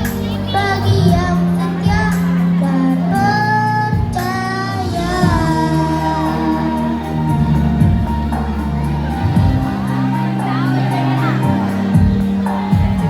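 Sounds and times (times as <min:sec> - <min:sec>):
child singing: 0:00.0 - 0:08.0
instrumental backing music: 0:00.0 - 0:13.0.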